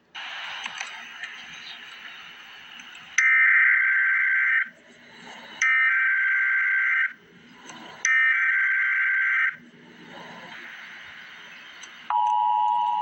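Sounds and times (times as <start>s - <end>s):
two-tone attention signal: 12.1s - 13.0s.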